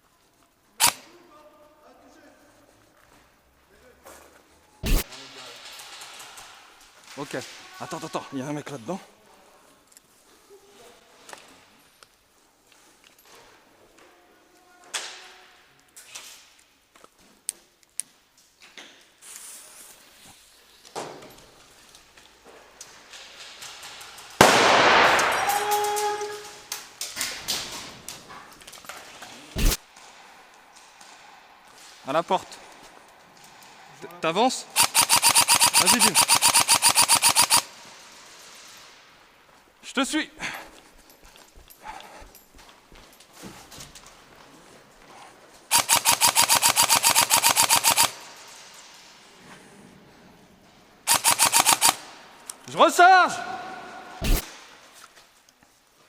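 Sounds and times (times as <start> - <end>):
airsoft rifle firing full-auto: 24.4 - 25.8, 29.6 - 29.8, 34.8 - 37.7, 45.7 - 48.3, 51.1 - 52.1, 54.2 - 54.5
sharp clicks and knocks: 29.6 - 29.8.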